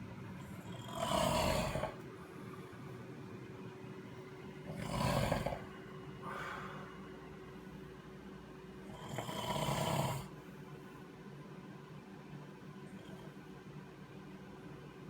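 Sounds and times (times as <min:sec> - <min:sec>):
loud snoring: 0:00.6 - 0:02.0, 0:04.6 - 0:05.7, 0:08.9 - 0:10.3
soft breath: 0:06.2 - 0:07.1.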